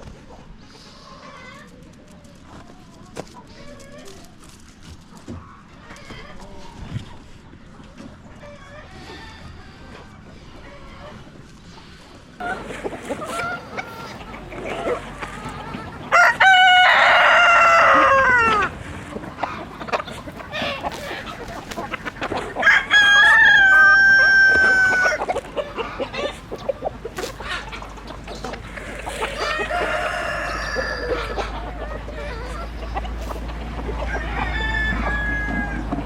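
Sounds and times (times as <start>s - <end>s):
chickens clucking: 0.0s - 36.0s
rooster crowing: 16.1s - 18.7s, 22.6s - 25.2s, 29.4s - 31.6s, 34.0s - 36.0s.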